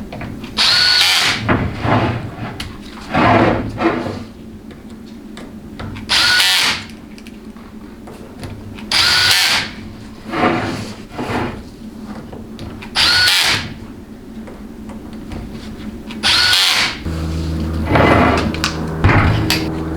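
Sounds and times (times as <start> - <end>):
power driver running bolts: 16.2 - 19.9.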